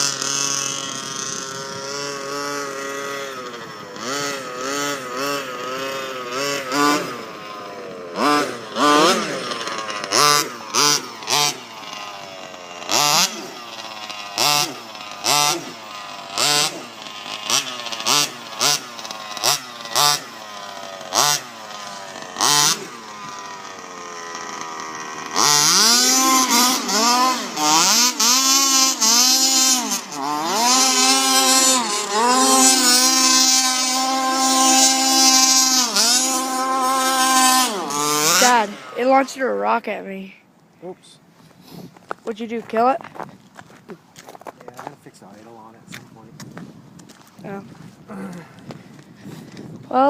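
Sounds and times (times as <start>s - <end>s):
small engine revving: 0.0s - 50.0s.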